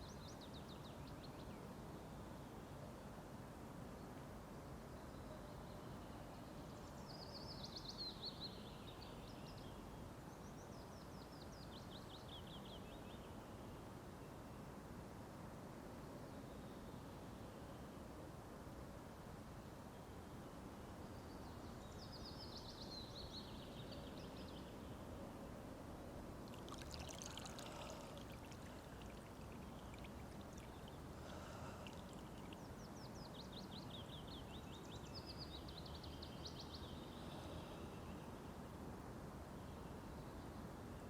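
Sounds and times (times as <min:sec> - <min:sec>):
water rushing: 0:26.4 - 0:32.7
small birds singing: 0:26.5 - 0:38.5.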